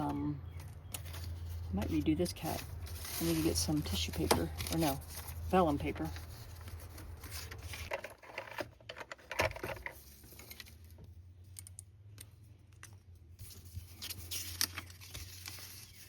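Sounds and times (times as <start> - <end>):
paper rustling: 0.6 - 8.7, 13.4 - 16.0.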